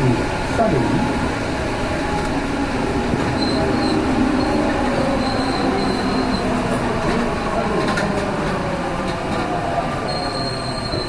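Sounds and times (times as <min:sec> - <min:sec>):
train running rumble: 0:00.0 - 0:11.0
thin high whistle: 0:10.1 - 0:11.0.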